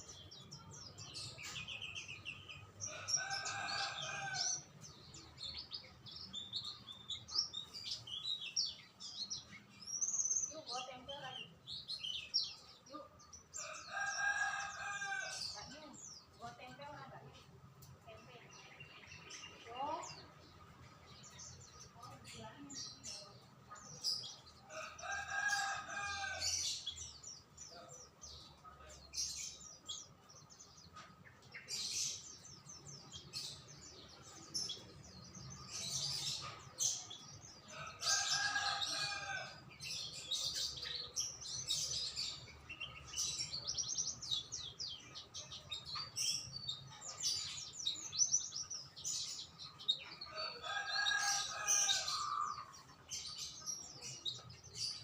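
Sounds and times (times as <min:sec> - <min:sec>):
songbirds chirping: 0:00.0 - 0:55.0
rooster crowing: 0:13.6 - 0:15.5, 0:24.8 - 0:26.7, 0:37.8 - 0:39.6, 0:50.4 - 0:52.7.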